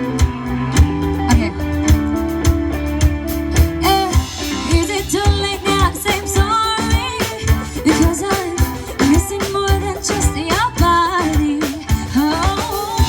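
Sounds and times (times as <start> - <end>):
guitars: 0.0 - 13.0
live band playing: 0.0 - 13.0.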